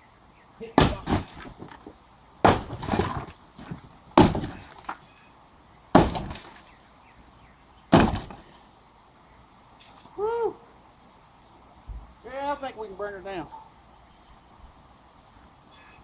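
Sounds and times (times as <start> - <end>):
sledgehammer blows: 0.8 - 4.9
breaking material spilling: 2.5 - 3.4.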